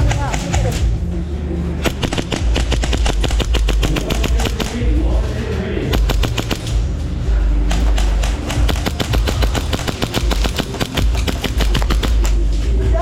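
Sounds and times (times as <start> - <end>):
low rumble: 0.0 - 13.0
airsoft guns firing: 1.8 - 5.1, 5.9 - 7.0, 7.6 - 12.6.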